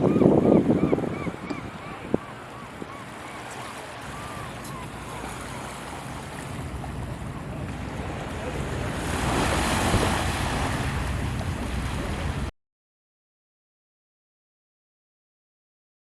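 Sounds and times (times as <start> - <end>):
wind buffeting microphone: 0.0 - 3.2, 3.8 - 12.5.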